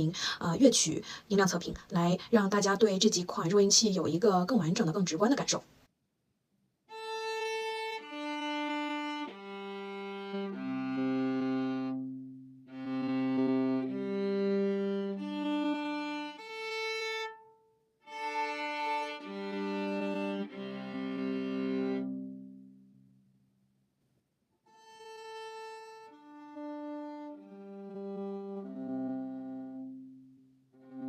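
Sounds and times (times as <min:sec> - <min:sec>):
viola bowing open strings: 0:06.9 - 0:22.6, 0:24.9 - 0:30.1, 0:30.8 - 0:31.0.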